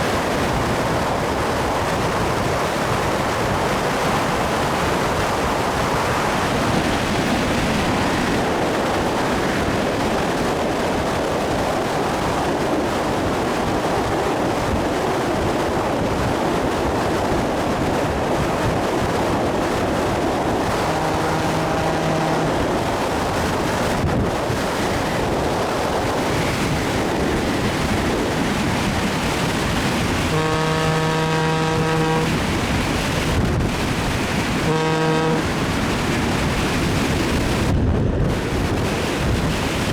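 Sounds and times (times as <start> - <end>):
train rushing: 0.0 - 39.9
locomotive horn: 20.4 - 23.3, 30.2 - 32.8, 34.6 - 35.8.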